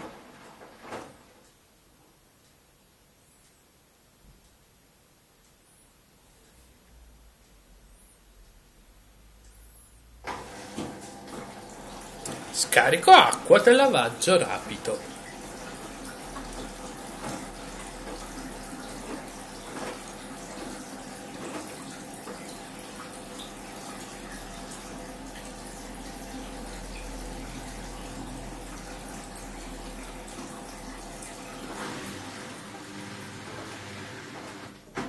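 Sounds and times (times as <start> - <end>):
drain pump humming: 10.3 - 35.0
flowing water: 10.4 - 34.8.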